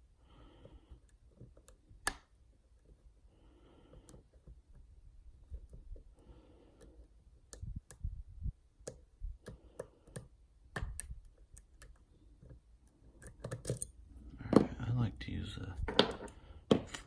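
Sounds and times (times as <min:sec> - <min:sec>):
lock picks clicking in a lock: 0:08.8 - 0:14.0.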